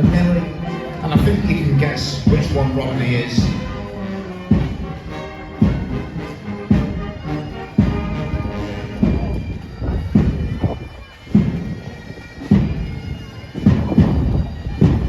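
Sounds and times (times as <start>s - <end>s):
bass drum beating: 0.0s - 0.4s, 1.2s - 1.6s, 2.3s - 2.7s, 3.4s - 7.2s, 7.8s - 10.8s, 13.6s - 15.0s
wind instruments sustained tones: 0.0s - 15.0s.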